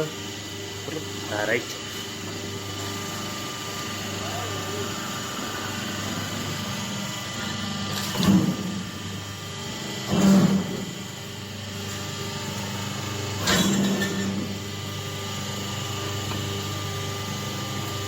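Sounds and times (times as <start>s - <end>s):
machine motor hum: 0.0s - 18.0s.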